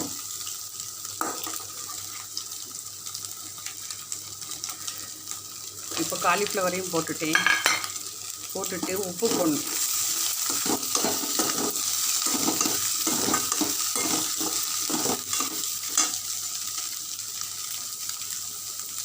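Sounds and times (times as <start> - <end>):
food sizzling in a pan: 0.0 - 19.0
spoon stirring and scraping: 8.8 - 16.2.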